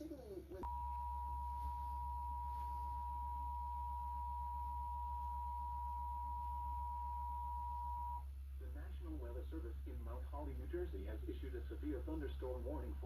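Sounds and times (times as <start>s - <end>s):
steady two-tone alert beep: 0.6s - 8.2s.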